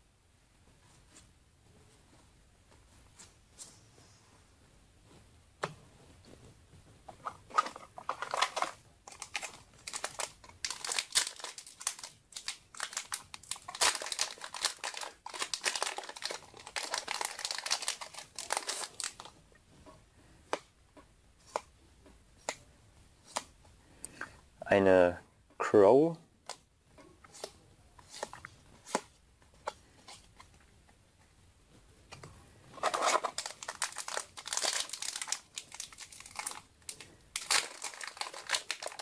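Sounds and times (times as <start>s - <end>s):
foil wrapper tearing and crinkling: 8.1s - 19.3s, 32.8s - 39.0s.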